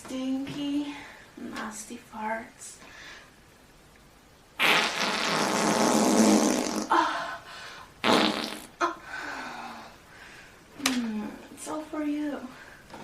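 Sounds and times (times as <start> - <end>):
farts: 4.6 - 6.9, 8.0 - 8.8.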